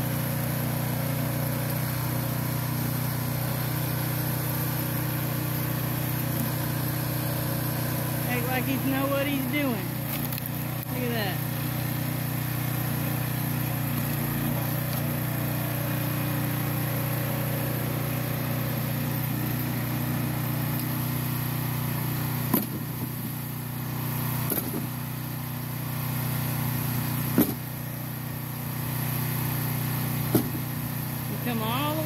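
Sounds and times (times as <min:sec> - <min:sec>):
small gas engine running: 0:00.0 - 0:32.0
logs cracking as they split: 0:10.0 - 0:10.9.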